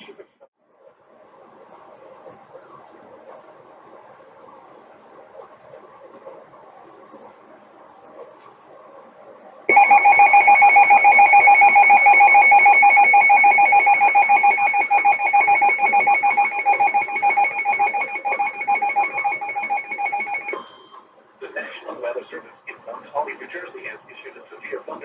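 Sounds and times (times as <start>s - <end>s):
loud steady alert tone: 9.7s - 20.9s.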